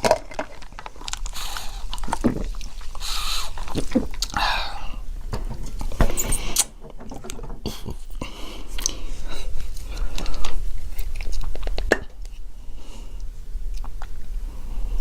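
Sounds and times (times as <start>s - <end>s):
crunchy chips chewing: 0.0s - 4.5s.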